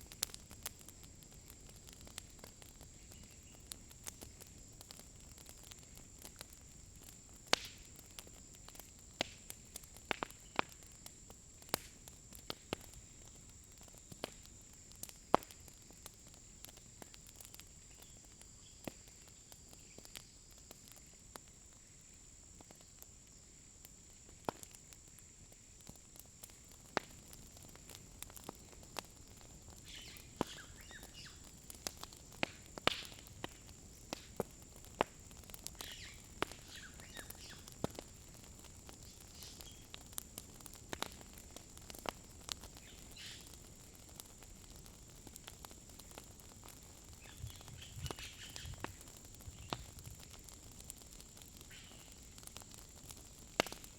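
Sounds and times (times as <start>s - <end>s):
wood fire crackling and popping: 0.0s - 53.9s.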